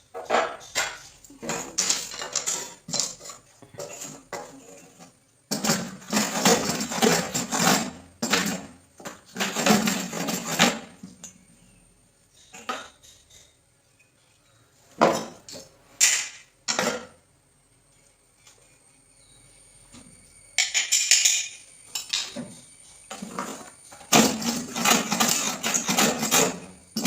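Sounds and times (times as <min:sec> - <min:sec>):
scraping or cutting wood: 0:05.5 - 0:10.9, 0:23.2 - 0:26.8
wood and hand tools clattering: 0:05.5 - 0:11.0, 0:15.0 - 0:16.9, 0:23.1 - 0:27.0.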